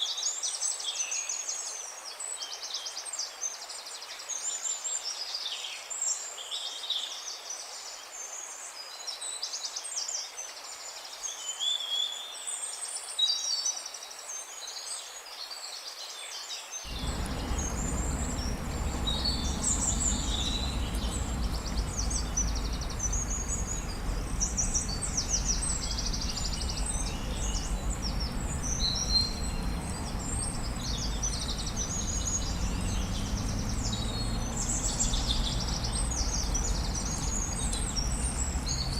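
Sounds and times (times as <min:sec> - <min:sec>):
songbirds chirping and trilling: 0:16.3 - 0:38.9
low steady rumbling: 0:16.9 - 0:38.9.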